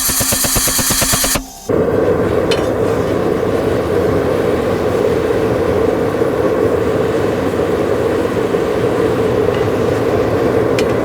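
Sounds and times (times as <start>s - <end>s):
fast mechanical clatter: 0.0s - 1.7s
steady machine hum and rush: 0.0s - 11.0s.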